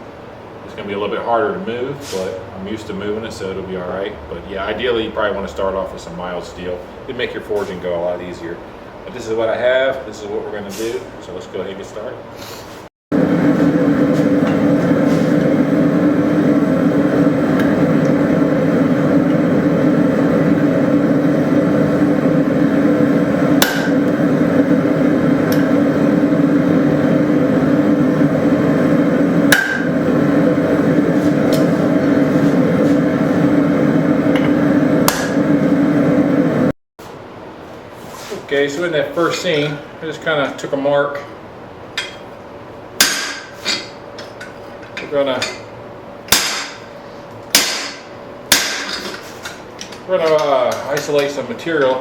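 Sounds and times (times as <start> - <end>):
hammer forging hot steel: 13.2 - 36.4, 43.0 - 45.6, 46.3 - 46.9, 47.5 - 52.0.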